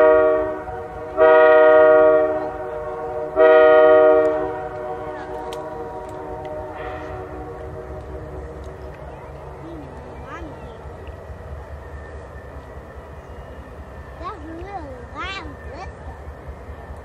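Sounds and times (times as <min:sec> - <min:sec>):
locomotive air horn blasts: 0:00.0 - 0:08.6.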